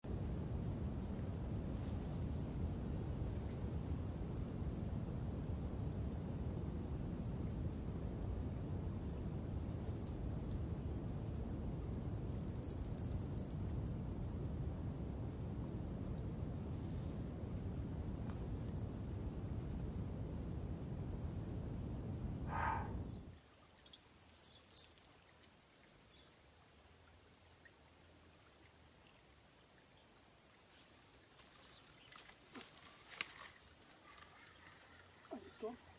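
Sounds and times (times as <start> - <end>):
constant low rumble: 0.0 - 23.3
insects chirring: 0.0 - 35.9.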